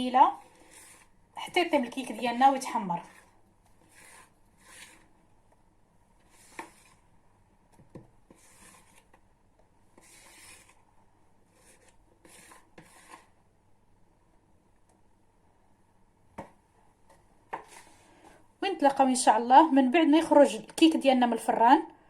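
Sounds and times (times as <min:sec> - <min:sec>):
faint rubbing strokes: 0:00.3 - 0:01.2, 0:02.9 - 0:05.2, 0:06.2 - 0:07.1, 0:08.3 - 0:09.1, 0:10.0 - 0:10.9, 0:11.5 - 0:13.4.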